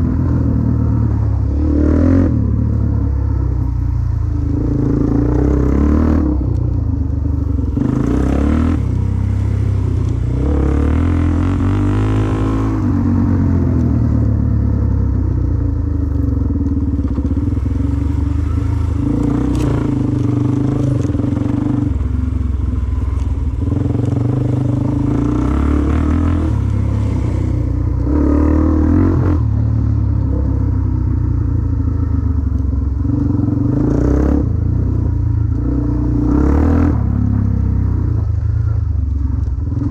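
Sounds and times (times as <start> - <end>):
dirt bike engine revving: 7.6 - 13.8, 17.0 - 22.1, 23.7 - 29.8.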